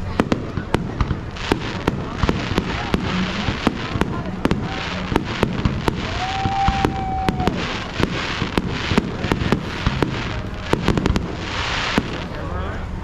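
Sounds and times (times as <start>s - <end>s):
fireworks bangs and pops: 0.0s - 12.6s
rumbling hiss: 0.0s - 13.0s.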